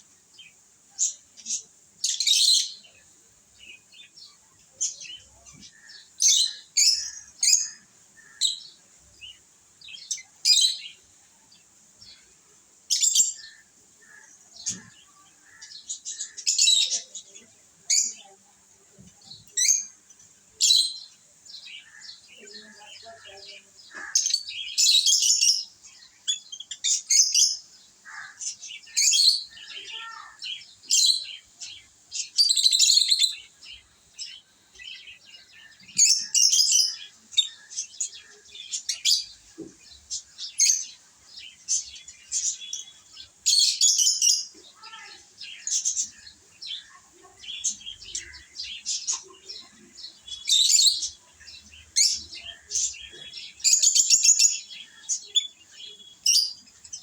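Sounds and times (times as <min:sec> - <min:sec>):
lovebirds chirping: 0:00.0 - 0:57.0.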